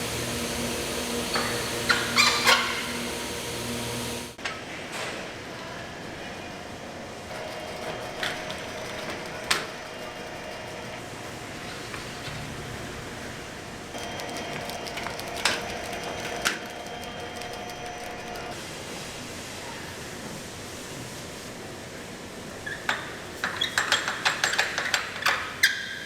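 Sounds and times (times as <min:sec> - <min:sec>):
steady machine hum: 0:00.0 - 0:04.4.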